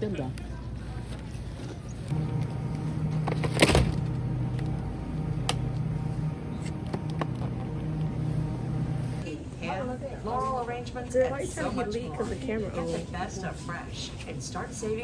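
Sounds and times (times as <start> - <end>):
motor humming: 2.1 - 9.2.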